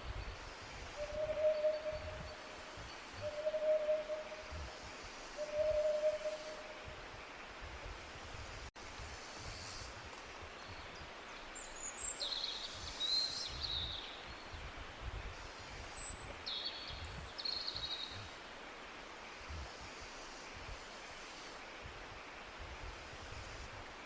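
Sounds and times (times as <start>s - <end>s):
birds chirping and trilling: 1.0s - 6.7s.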